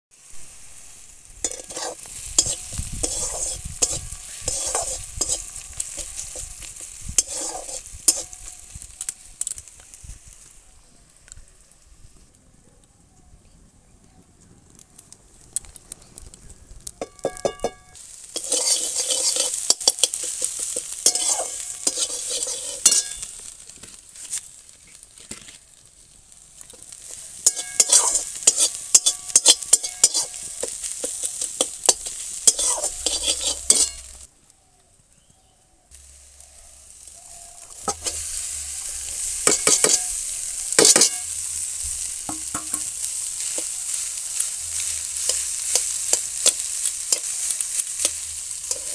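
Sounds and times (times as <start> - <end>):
rice sizzling in oil: 0.1 - 11.8, 15.4 - 34.3, 35.9 - 48.9
spatula scraping and clinking pan: 1.4 - 8.6, 17.0 - 23.6, 26.7 - 34.3, 36.1 - 48.9.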